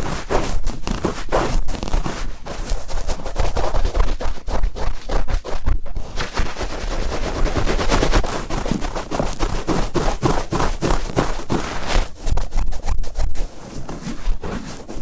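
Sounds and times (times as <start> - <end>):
cotton swab scratching microphone: 0.0 - 15.0.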